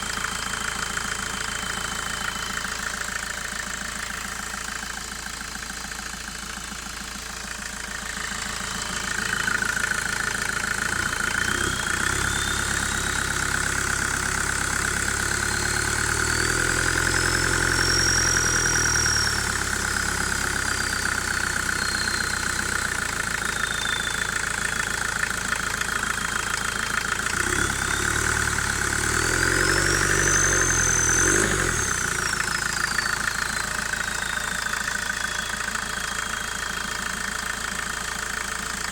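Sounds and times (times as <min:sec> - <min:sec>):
turbocharger whistle: 0:00.0 - 0:38.9
diesel engine revving: 0:07.6 - 0:36.3.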